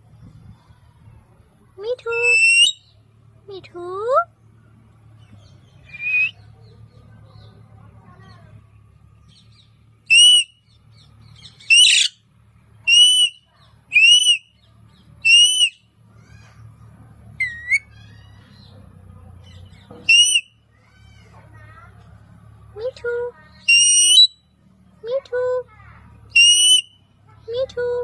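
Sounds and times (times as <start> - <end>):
parrot squawk: 2.2 - 2.8, 11.6 - 12.2, 14.0 - 14.4, 15.3 - 15.8, 20.1 - 20.5, 23.6 - 24.4, 26.4 - 26.9
parrot whistling: 2.2 - 2.9, 5.9 - 6.4, 10.1 - 10.5, 11.6 - 12.2, 12.9 - 14.4, 15.2 - 15.8, 17.4 - 17.9, 20.0 - 20.5, 23.6 - 24.4, 26.4 - 27.0.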